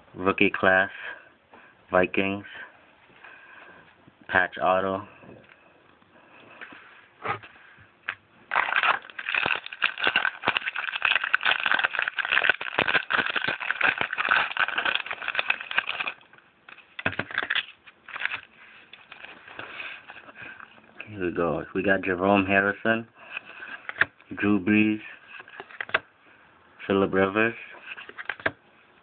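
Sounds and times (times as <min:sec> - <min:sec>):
plastic wrapper tearing and crinkling: 0:08.5 - 0:20.2.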